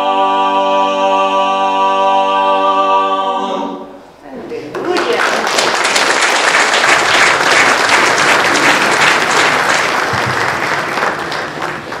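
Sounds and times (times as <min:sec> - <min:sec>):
congregation applauding: 0:04.7 - 0:12.0.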